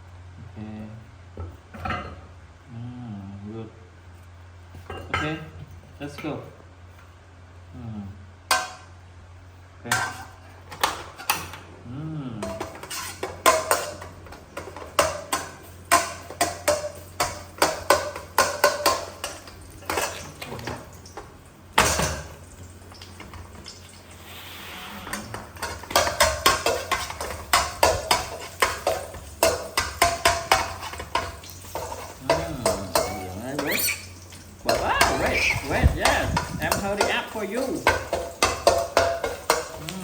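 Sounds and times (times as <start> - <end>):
utensils clinking against dishes: 12.4 - 21.2, 25.3 - 40.0
brief hiss: 24.0 - 25.3.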